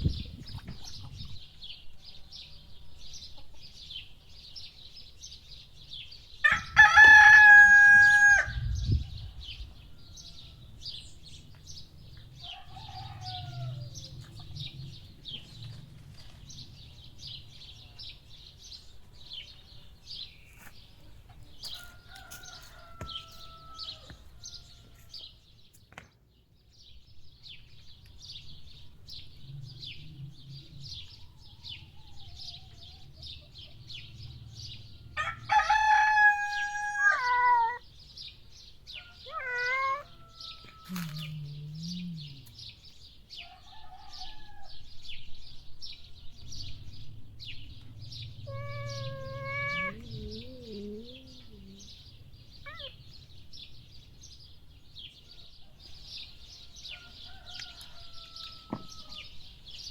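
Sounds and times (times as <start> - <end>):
rooster crowing: 6.4 - 8.6, 12.4 - 14.1, 21.8 - 24.9, 35.1 - 37.8, 39.0 - 41.4, 43.4 - 44.9, 56.9 - 59.3
small birds twittering: 8.5 - 59.9.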